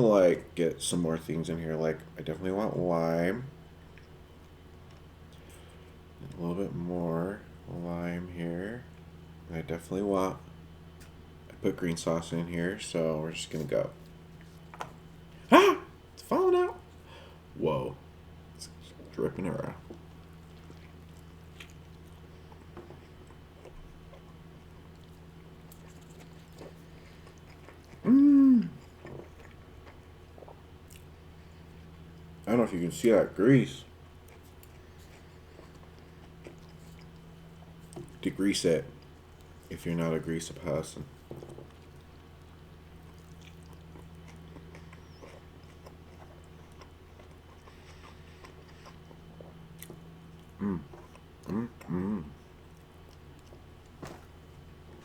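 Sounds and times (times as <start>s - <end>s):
steady low hum: 0.0s - 55.0s
person humming mmm: 15.4s - 15.9s, 27.9s - 28.9s, 50.6s - 52.5s
short vocal sounds: 15.4s - 16.0s, 28.0s - 28.8s, 50.6s - 52.4s
person chewing: 19.9s - 32.4s, 34.1s - 38.2s, 41.2s - 55.0s.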